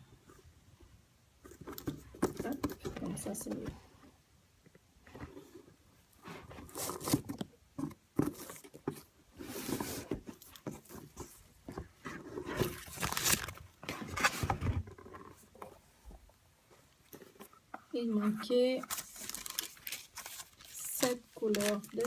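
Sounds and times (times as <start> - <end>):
packaging rustling and scraping: 5.1 - 15.9, 17.0 - 22.0.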